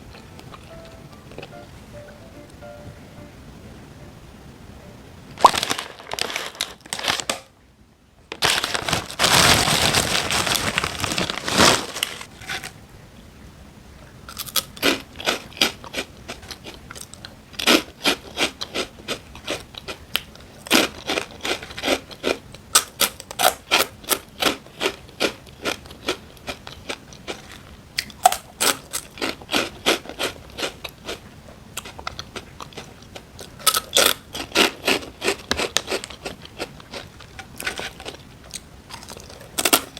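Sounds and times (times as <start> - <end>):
packaging rustling: 5.4 - 7.4, 8.4 - 12.7
crunchy chewing: 14.3 - 39.9.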